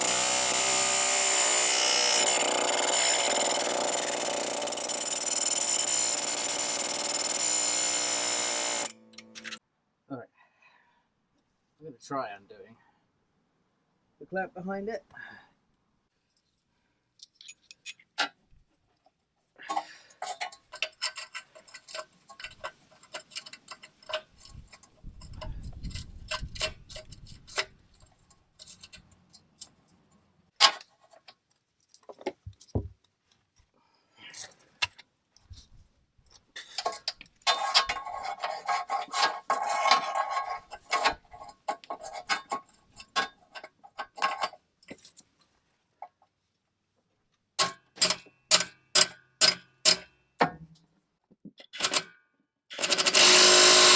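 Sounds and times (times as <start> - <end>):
ratchet clicking: 0.0 - 9.6, 52.8 - 53.9.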